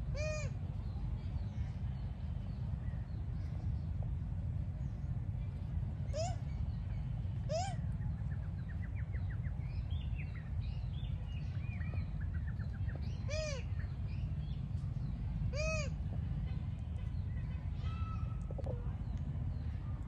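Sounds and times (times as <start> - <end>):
steady low rumble: 0.0 - 20.0.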